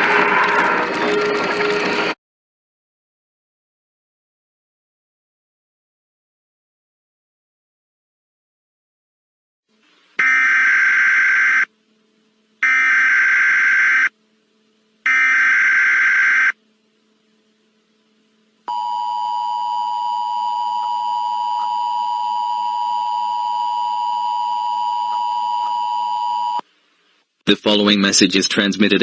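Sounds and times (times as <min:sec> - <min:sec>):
warbling data tone bursts: 0:10.2 - 0:11.7, 0:12.6 - 0:14.1, 0:15.0 - 0:16.6
two-tone attention signal: 0:18.7 - 0:26.6.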